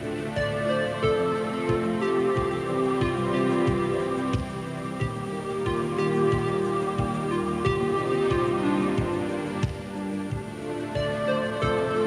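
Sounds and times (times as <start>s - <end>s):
soft melodic instrumental music: 0.0s - 12.0s.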